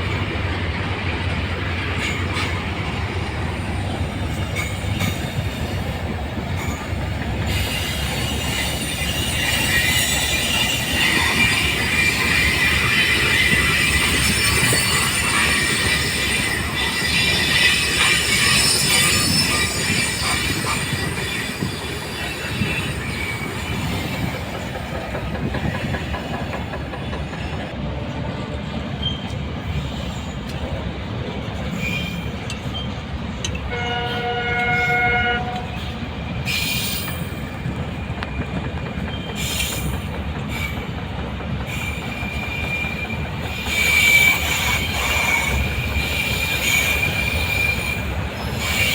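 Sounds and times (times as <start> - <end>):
wheels clacking over rail joints: 0.0 - 27.8, 34.6 - 48.9
train wheels rumbling on rail: 0.0 - 48.9
high wheel squeal: 7.4 - 24.8, 34.7 - 40.9, 41.7 - 48.9
locomotive horn: 33.6 - 35.8.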